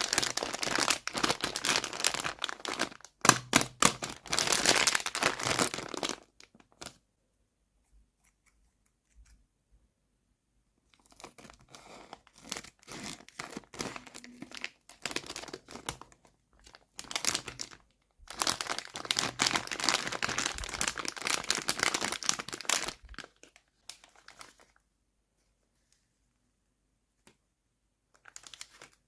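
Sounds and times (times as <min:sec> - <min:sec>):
packaging crinkling and tearing: 0:00.0 - 0:07.0, 0:10.9 - 0:24.8, 0:28.2 - 0:29.0.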